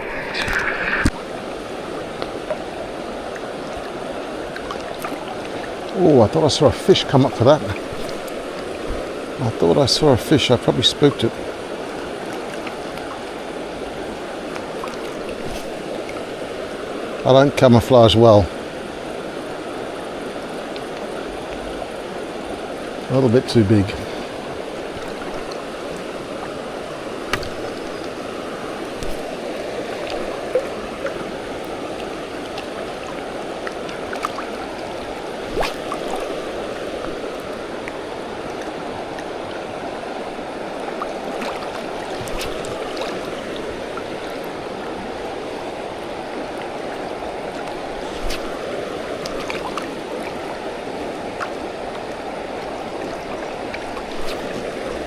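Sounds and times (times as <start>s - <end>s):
river water rushing: 0.0s - 55.0s.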